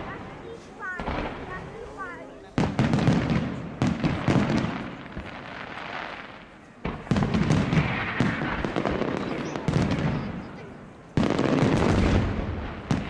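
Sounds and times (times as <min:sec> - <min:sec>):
fireworks bursting in sharp bangs: 0:00.0 - 0:13.0
fireworks crackling: 0:00.0 - 0:13.0.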